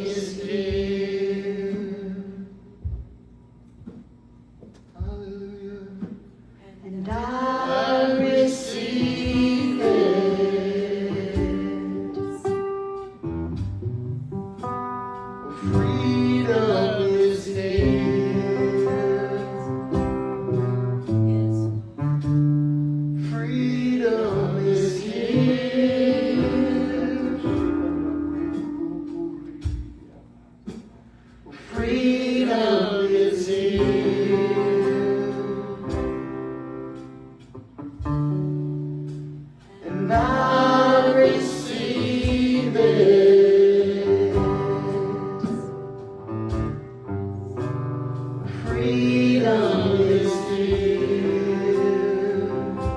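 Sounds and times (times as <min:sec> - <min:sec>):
guitar accompaniment: 0:00.0 - 0:06.4, 0:07.0 - 0:52.9
person singing: 0:07.0 - 0:12.6, 0:15.6 - 0:20.3, 0:23.2 - 0:29.7, 0:39.8 - 0:45.9, 0:48.5 - 0:52.9.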